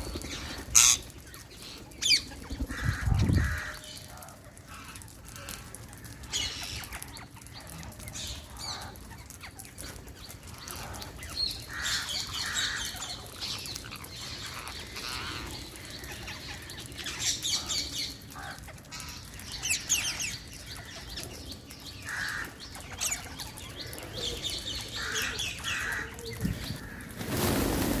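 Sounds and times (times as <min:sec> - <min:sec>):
parrots chirping shrilly: 0:00.4 - 0:01.0.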